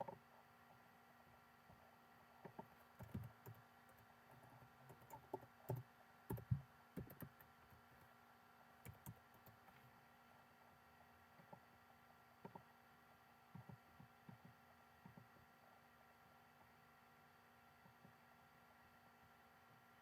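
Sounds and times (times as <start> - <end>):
faint steady hum: 0.0 - 20.0
typing on computer keyboard: 2.5 - 7.8, 8.8 - 9.6.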